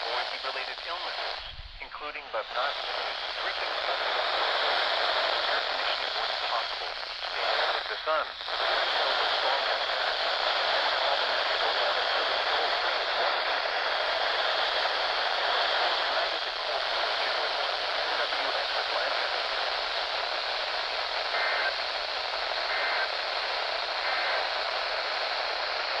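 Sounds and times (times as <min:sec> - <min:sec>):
radio static hiss: 0:00.0 - 0:26.0.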